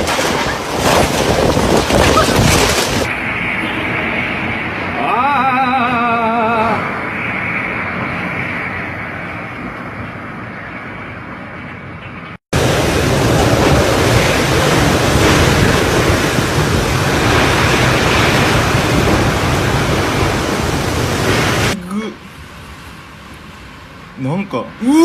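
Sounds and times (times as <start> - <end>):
wind buffeting microphone: 0.0 - 3.3, 12.6 - 21.8
wind and driving rain: 0.0 - 24.2.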